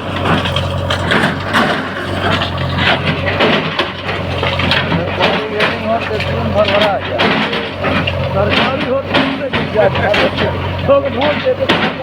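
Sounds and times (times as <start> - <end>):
bulldozer diesel engine droning: 0.0 - 12.0
demolition knocks and crashes: 0.0 - 12.0.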